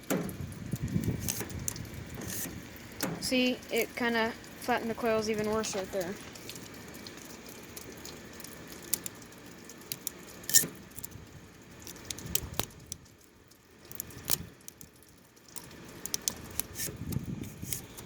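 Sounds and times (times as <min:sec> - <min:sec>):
fin comb scraping metal fins: 0:02.2 - 0:03.2.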